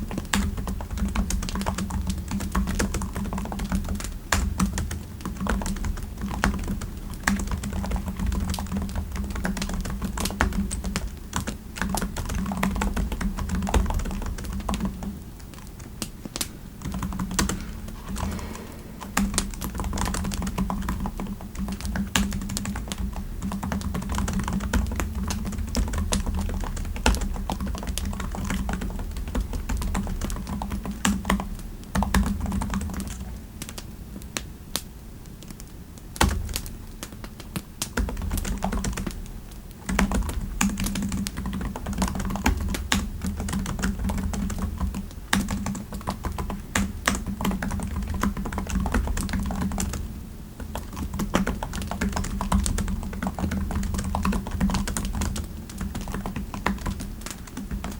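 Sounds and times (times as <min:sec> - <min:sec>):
typing on a computer keyboard: 0:00.4 - 0:15.1, 0:22.2 - 0:31.3, 0:37.9 - 0:39.2, 0:39.9 - 0:57.9
low background rumble: 0:16.6 - 0:23.6.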